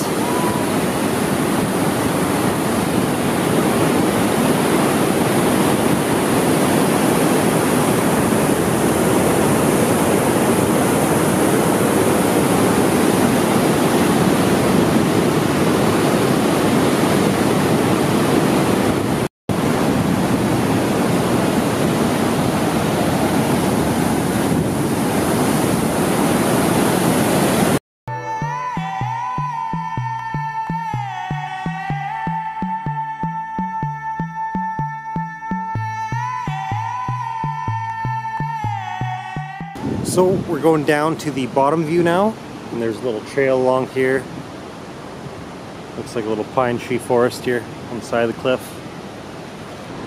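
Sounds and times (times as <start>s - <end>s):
waterfall rushing: 0.0s - 14.2s.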